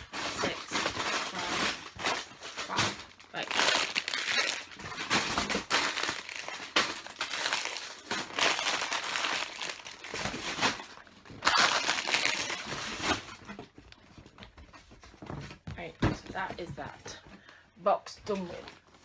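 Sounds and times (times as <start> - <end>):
plastic bags crinkling: 0.0 - 14.0.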